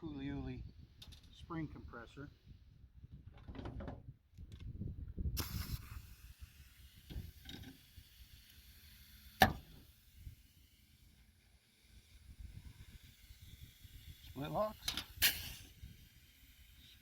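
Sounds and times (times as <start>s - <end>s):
steady hiss: 5.4s - 17.0s.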